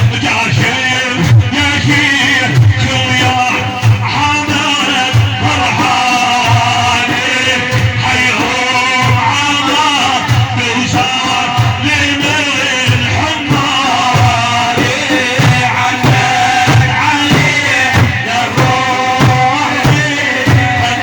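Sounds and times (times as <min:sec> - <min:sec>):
steady drum beat: 0:00.0 - 0:21.0.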